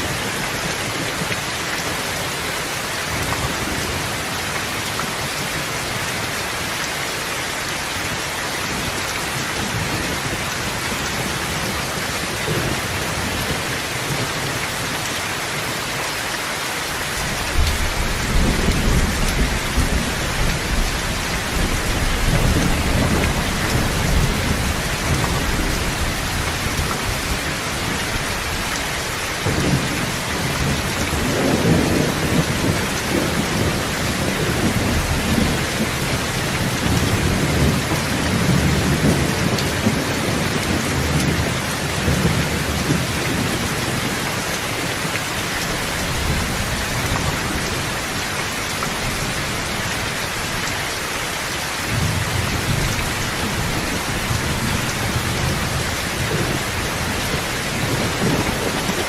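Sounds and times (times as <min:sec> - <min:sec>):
steady rain hiss: 0:00.0 - 0:59.0
rolling thunder: 0:17.4 - 0:27.4.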